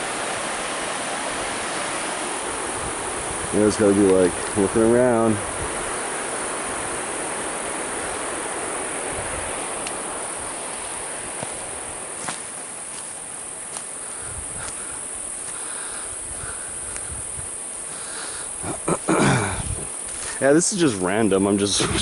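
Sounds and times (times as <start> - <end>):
high insect-like buzz: 0.0 - 22.0
rushing hiss: 0.0 - 22.0
faint clicks: 9.8 - 10.0.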